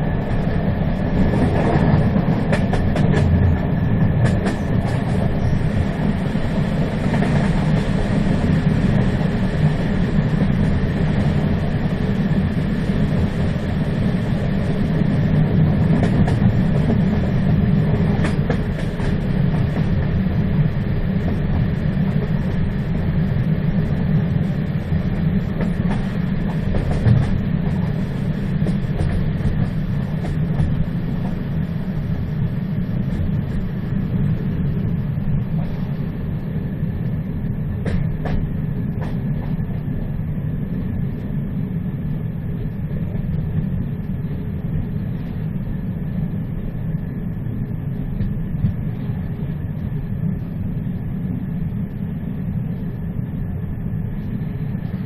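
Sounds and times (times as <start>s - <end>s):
train rumbling: 0.0s - 55.0s
faint clicks from rails: 1.2s - 6.2s, 6.9s - 8.1s, 15.6s - 20.2s, 25.0s - 32.2s, 34.7s - 36.0s, 37.0s - 41.3s, 46.5s - 52.1s.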